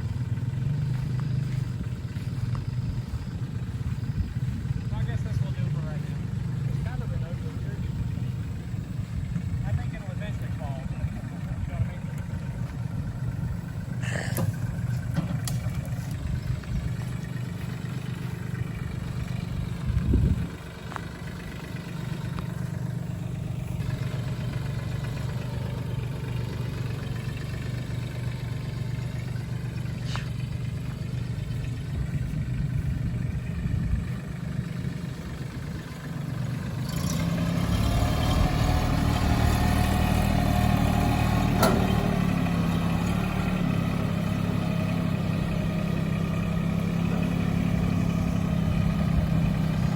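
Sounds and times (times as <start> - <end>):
vehicle engine running: 0.0 - 49.9.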